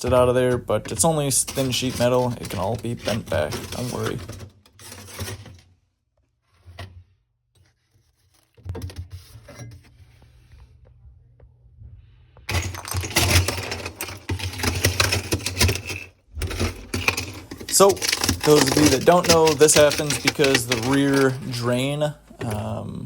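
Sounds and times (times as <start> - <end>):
metal scraping on ice: 0.0 - 5.6, 12.5 - 22.7
ice crackling and clattering: 0.0 - 5.7, 12.5 - 22.8.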